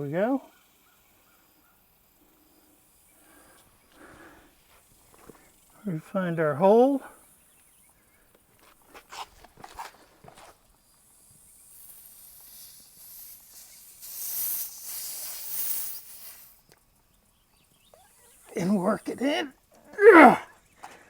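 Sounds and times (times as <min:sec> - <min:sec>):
air hissing from tire: 0:00.0 - 0:05.9, 0:07.0 - 0:16.7.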